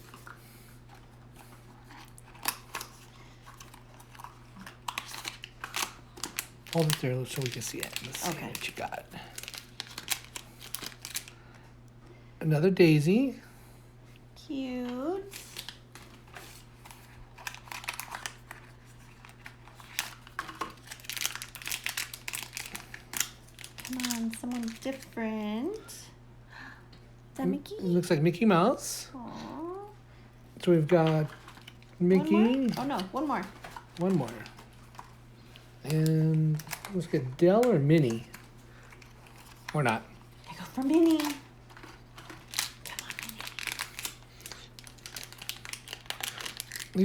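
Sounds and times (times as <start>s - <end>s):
plastic package crinkling and clicking: 0.0s - 11.4s, 15.2s - 25.1s, 30.9s - 47.0s
low steady hum: 0.0s - 47.0s.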